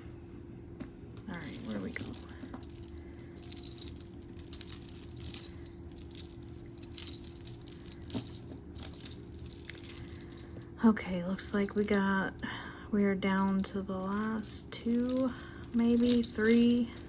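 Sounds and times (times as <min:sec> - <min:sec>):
jewelry jangling and clinking: 0:01.3 - 0:17.0.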